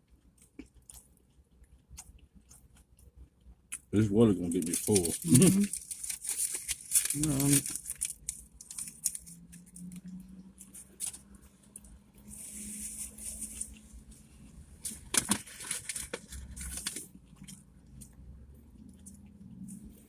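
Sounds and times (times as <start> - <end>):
chewing: 0.0 - 3.9
wrappers rustling and clicking: 4.5 - 10.0.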